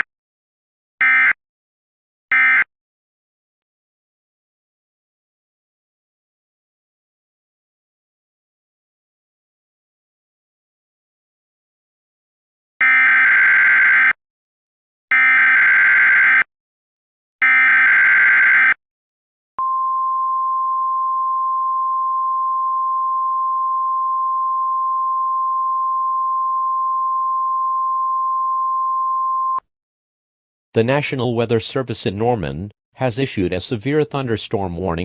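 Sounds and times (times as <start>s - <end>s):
steady warning alarm tone: 1.0s - 1.4s, 2.3s - 2.7s, 12.8s - 14.2s, 15.1s - 16.5s, 17.4s - 18.8s.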